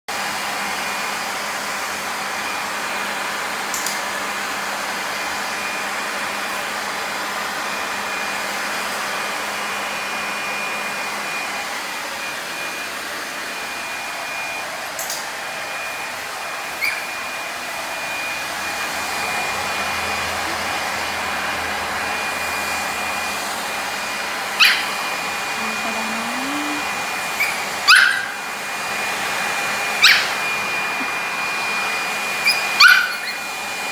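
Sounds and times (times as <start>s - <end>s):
hair dryer running: 0.1s - 33.9s
dog yipping: 16.8s - 17.1s, 24.6s - 24.9s, 27.4s - 28.4s, 30.0s - 30.4s, 32.4s - 33.5s.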